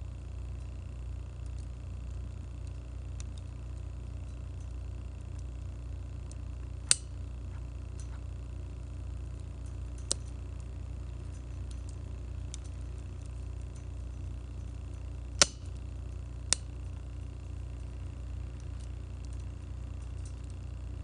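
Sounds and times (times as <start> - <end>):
steady low rumble: 0.0 - 21.0
campfire crackling: 0.1 - 21.0
sharp pops of fire: 1.4 - 8.4, 9.0 - 20.8.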